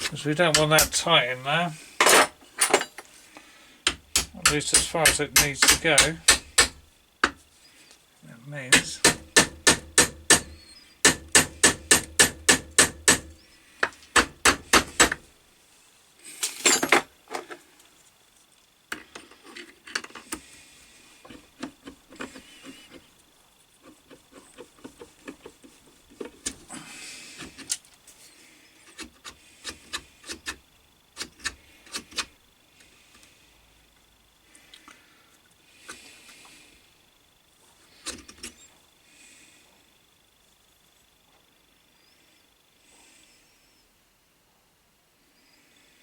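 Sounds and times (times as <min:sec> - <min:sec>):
metal parts tapping and knocking: 0:00.0 - 0:01.2, 0:02.0 - 0:03.1, 0:03.8 - 0:07.4, 0:08.6 - 0:15.3, 0:16.4 - 0:17.6, 0:23.8 - 0:26.6
hammer striking steel: 0:00.5 - 0:01.0, 0:03.9 - 0:06.8, 0:08.7 - 0:13.4.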